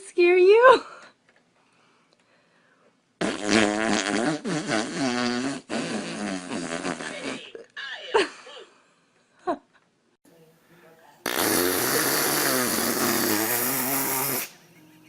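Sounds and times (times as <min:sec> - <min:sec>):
loud fart: 0:03.2 - 0:07.7, 0:11.2 - 0:14.5.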